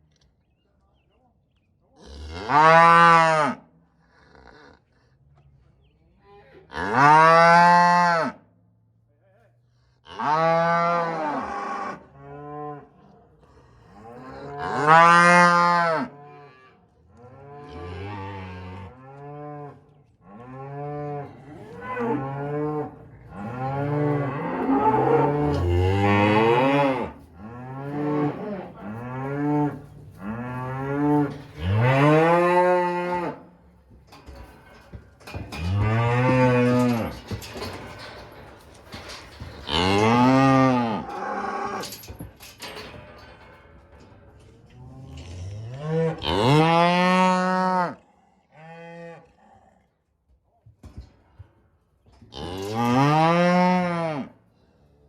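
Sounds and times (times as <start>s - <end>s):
cattle mooing: 20.4s - 33.5s, 35.5s - 37.4s, 39.6s - 42.0s, 44.9s - 49.4s, 52.4s - 54.3s.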